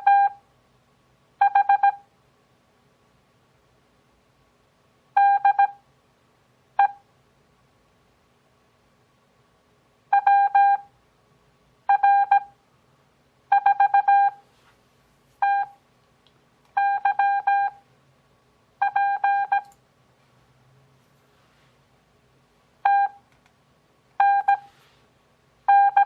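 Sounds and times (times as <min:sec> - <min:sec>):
morse code beeps: 0:00.0 - 0:00.4, 0:01.4 - 0:02.0, 0:05.2 - 0:05.8, 0:10.1 - 0:10.9, 0:11.9 - 0:12.5, 0:13.5 - 0:14.4, 0:15.4 - 0:15.8, 0:16.8 - 0:17.8, 0:18.8 - 0:19.7, 0:22.8 - 0:23.2, 0:24.2 - 0:24.7, 0:25.7 - 0:26.0.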